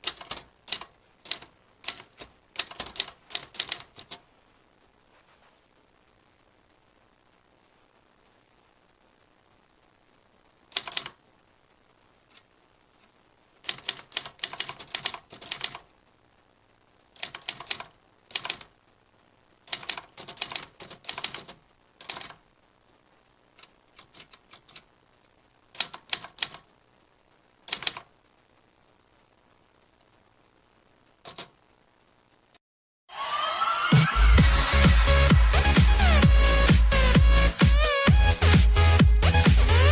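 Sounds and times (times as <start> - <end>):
typewriter keys clicking: 0.0 - 4.2, 10.7 - 11.2, 13.6 - 15.8, 17.2 - 18.7, 19.7 - 22.4, 24.0 - 24.8, 25.8 - 26.6, 27.7 - 28.1, 31.3 - 31.5.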